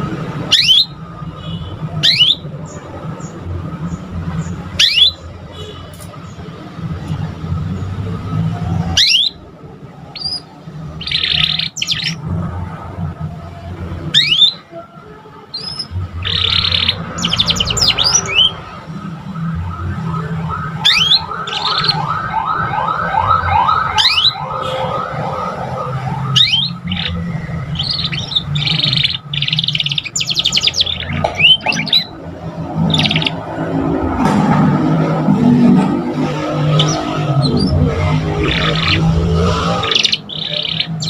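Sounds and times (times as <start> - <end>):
canary singing: 0.0 - 7.1, 7.7 - 12.8, 13.8 - 14.8, 15.4 - 18.9, 20.7 - 22.1, 23.9 - 24.9, 26.0 - 33.9, 36.2 - 41.0.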